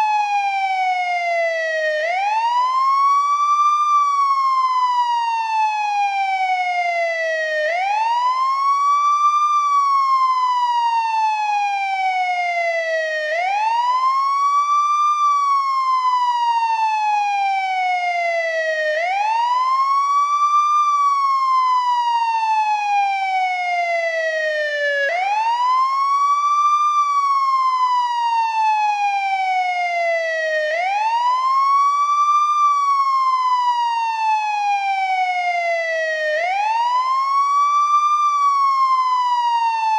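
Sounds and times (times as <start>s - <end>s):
ambulance wail siren: 0.0s - 39.9s.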